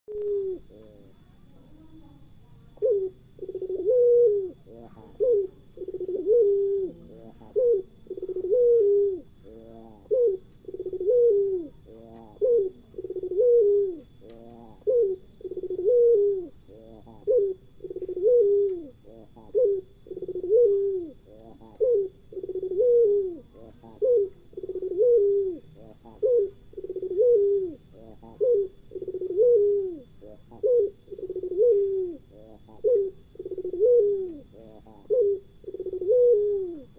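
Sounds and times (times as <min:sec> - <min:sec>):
dove cooing: 0:00.1 - 0:01.2, 0:02.6 - 0:36.9
small bird chirps: 0:00.1 - 0:36.1.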